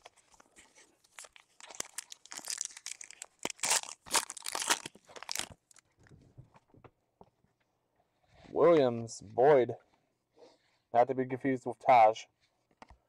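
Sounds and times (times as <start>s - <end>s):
plastic wrapper tearing and crinkling: 0.0s - 6.0s.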